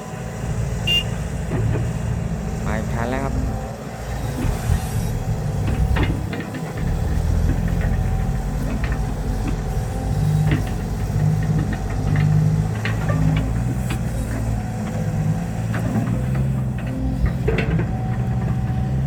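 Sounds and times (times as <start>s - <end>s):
diesel truck engine droning: 0.0s - 19.0s
knocks and rattles: 5.3s - 19.0s.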